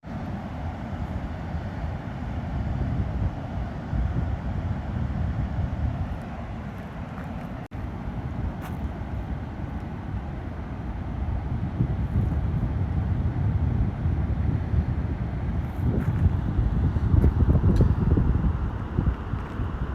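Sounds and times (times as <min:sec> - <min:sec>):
wind buffeting microphone: 0:00.0 - 0:19.9
river rushing: 0:05.8 - 0:11.4.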